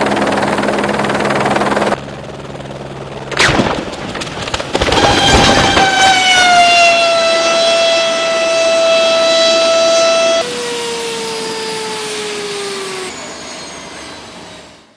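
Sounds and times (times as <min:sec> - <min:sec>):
loud crash: 0:03.4 - 0:06.2
siren-like wail sinking in pitch: 0:04.9 - 0:14.9.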